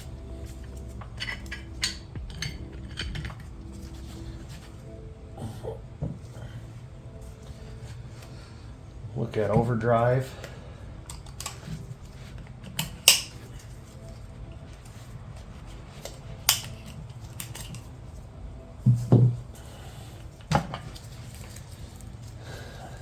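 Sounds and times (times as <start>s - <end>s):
steady low hum: 0.0s - 23.0s
metallic clicks and knocks: 0.4s - 3.5s, 16.0s - 17.9s.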